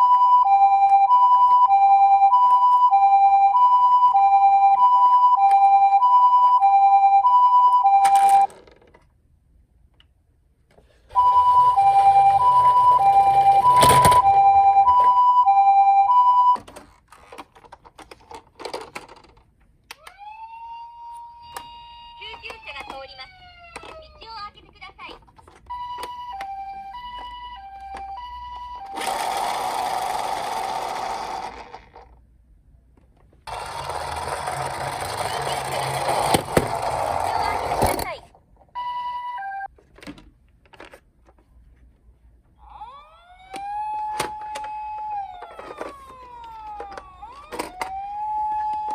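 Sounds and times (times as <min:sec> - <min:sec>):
toy electronic two-tone siren: 0:00.0 - 0:08.5, 0:11.1 - 0:16.6, 0:20.0 - 0:24.2, 0:25.7 - 0:31.6, 0:38.8 - 0:39.7, 0:42.6 - 0:48.9
toy car whirring: 0:25.7 - 0:32.2, 0:33.5 - 0:38.2, 0:43.6 - 0:48.9.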